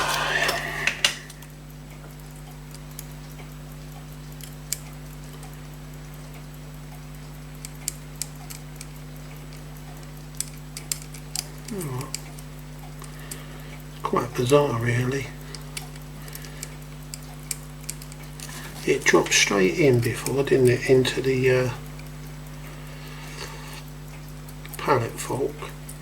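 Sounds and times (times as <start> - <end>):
electrical hum: 0.0 - 26.0
small tools clicking on metal: 7.6 - 13.4, 15.5 - 19.4.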